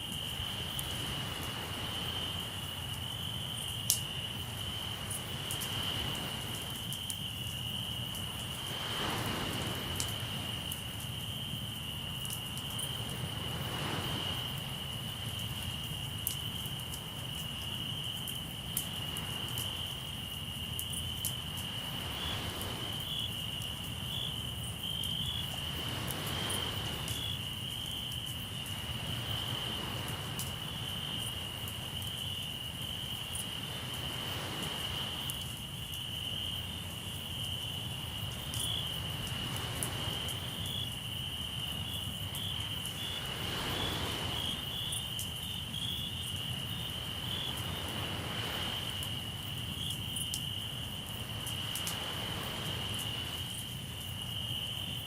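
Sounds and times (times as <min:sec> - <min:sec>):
sea waves washing in: 0:00.0 - 0:03.0, 0:04.3 - 0:07.0, 0:08.1 - 0:11.0, 0:12.8 - 0:15.6, 0:21.6 - 0:24.7, 0:25.3 - 0:35.5, 0:37.8 - 0:49.8, 0:50.9 - 0:54.5
campfire crackling: 0:00.0 - 0:54.9
crickets chirping: 0:00.0 - 0:55.0.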